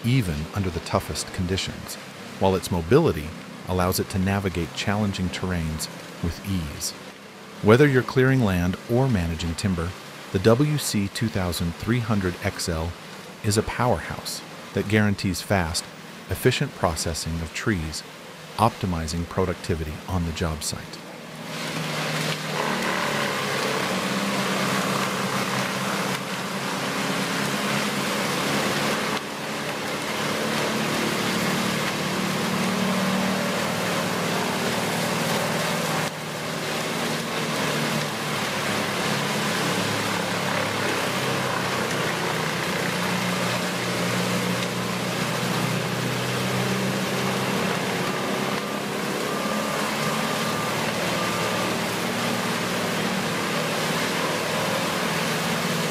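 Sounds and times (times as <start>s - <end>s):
tree chipper engine drone: 0.0s - 55.9s
loud rush of chipping noise: 21.3s - 55.9s.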